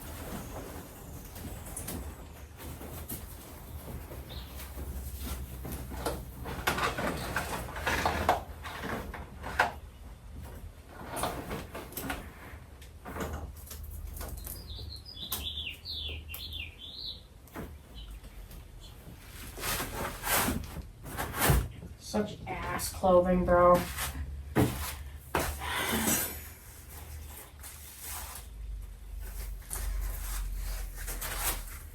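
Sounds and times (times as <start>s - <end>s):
plastic parts rustling and knocking: 0.0s - 16.2s.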